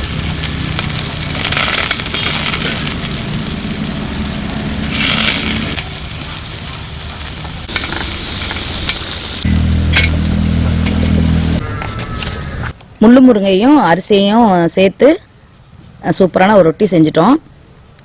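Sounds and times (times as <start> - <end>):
flatbread sizzling as it fries: 0.0 - 11.6.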